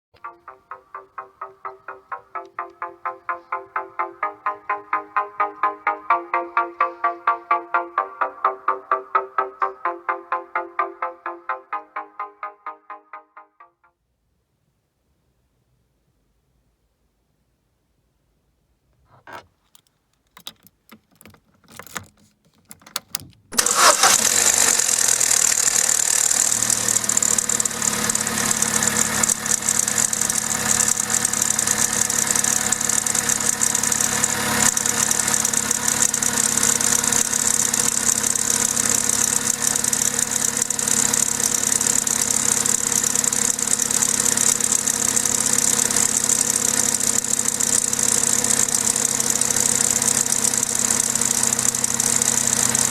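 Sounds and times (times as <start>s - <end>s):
car engine starting and idling: 22.8s - 52.9s
timing chain rattle: 24.9s - 52.9s.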